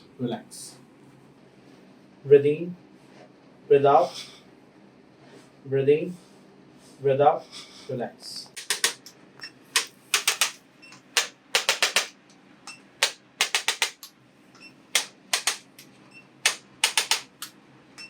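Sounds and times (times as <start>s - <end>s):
sharp repeating clicks: 8.6s - 9.2s, 9.8s - 12.3s, 13.0s - 14.2s, 14.9s - 17.6s.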